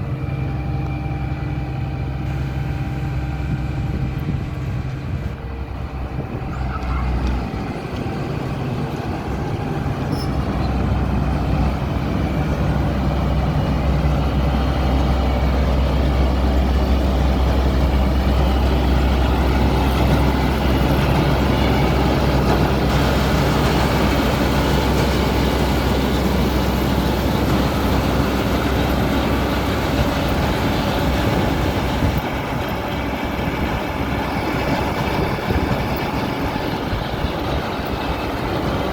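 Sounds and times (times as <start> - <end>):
combine harvester diesel engine: 0.0 - 38.9.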